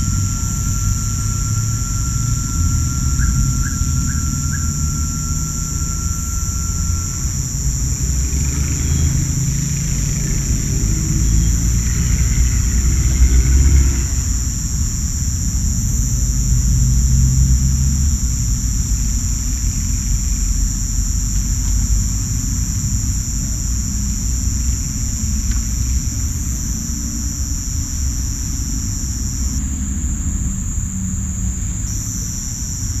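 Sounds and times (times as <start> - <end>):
low rumble: 0.0 - 18.9
crickets and cicadas chirring: 0.0 - 33.0.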